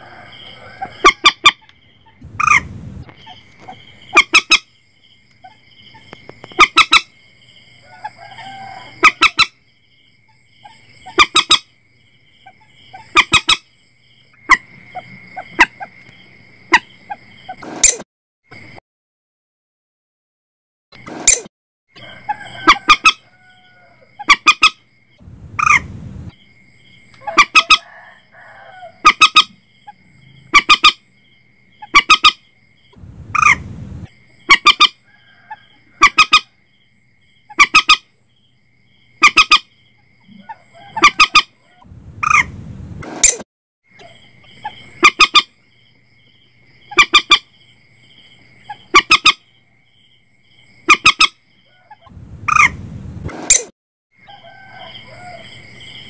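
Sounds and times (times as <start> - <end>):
moorhen calling: 0.6 - 4.7, 5.4 - 7.1, 10.6 - 11.7, 12.4 - 13.6, 24.2 - 24.8, 25.6 - 25.9, 27.2 - 27.8, 29.0 - 31.0, 31.8 - 32.4, 33.3 - 33.7, 34.4 - 35.0, 36.0 - 36.5, 37.5 - 38.0, 39.2 - 39.7, 40.4 - 42.6, 44.0 - 45.5, 46.9 - 47.4, 48.7 - 49.4, 50.8 - 52.8.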